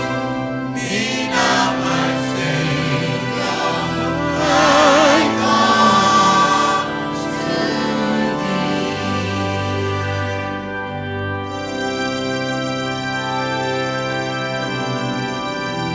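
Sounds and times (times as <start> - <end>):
singing voice with strong vibrato: 0.0 - 10.7
choir and congregation singing hymn: 0.0 - 12.3
sustained accompaniment: 0.0 - 15.9.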